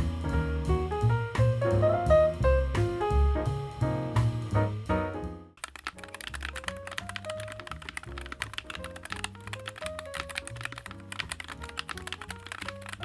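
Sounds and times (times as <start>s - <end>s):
background music: 0.0s - 13.0s
fast typing on mechanical keyboard: 5.6s - 13.0s.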